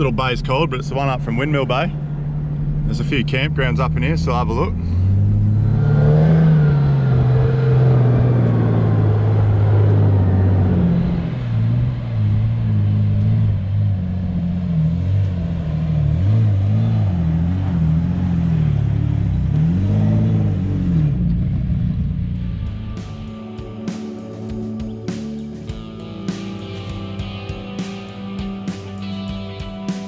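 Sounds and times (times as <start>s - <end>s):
vehicle engine revving: 1.1s - 30.0s.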